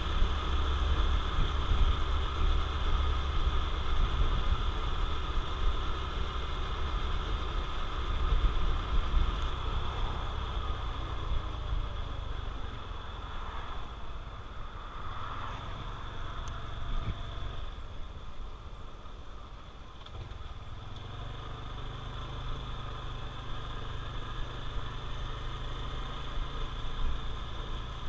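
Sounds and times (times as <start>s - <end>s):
motorcycle engine running: 0.0s - 28.0s.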